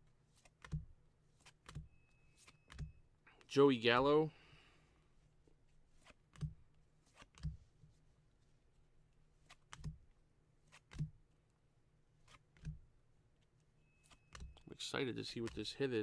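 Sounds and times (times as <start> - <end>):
cards flipped by hand: 0.3 - 2.9, 5.9 - 7.6, 9.4 - 11.1, 12.2 - 12.8, 13.4 - 14.6.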